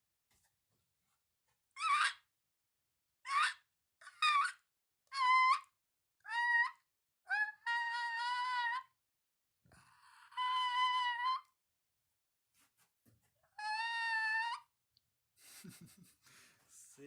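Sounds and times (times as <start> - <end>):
animal squeaky calls: 1.8 - 2.2, 3.3 - 5.7, 13.6 - 14.7.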